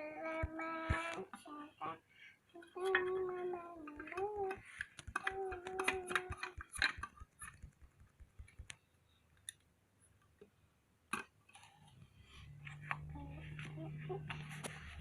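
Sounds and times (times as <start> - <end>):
small hard objects clicking: 3.8 - 8.8.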